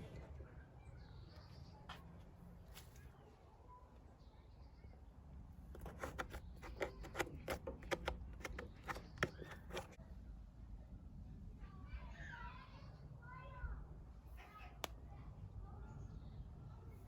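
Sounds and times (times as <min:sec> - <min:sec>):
sharp clicks and taps: 0:05.8 - 0:10.0.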